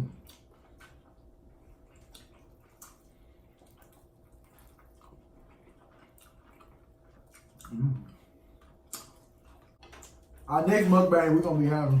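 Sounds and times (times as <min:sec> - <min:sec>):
mouth sounds of chewing food: 0:00.0 - 0:10.6.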